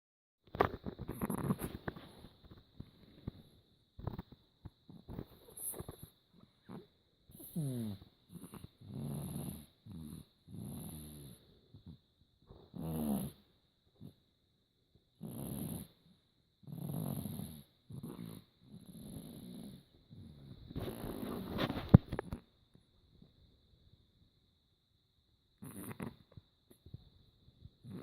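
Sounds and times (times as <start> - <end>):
dog snoring: 0.6 - 14.2, 15.2 - 22.4, 25.6 - 26.8, 27.8 - 28.0.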